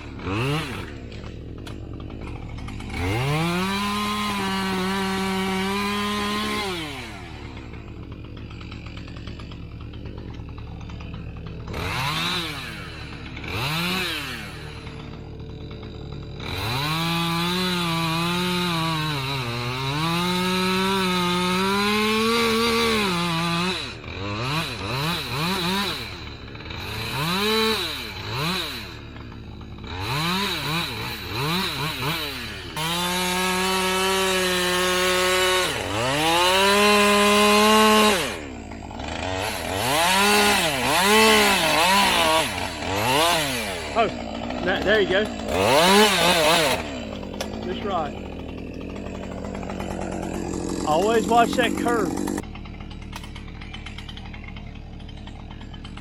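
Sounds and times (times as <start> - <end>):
chainsaw revving and cutting wood: 0.0 - 56.0.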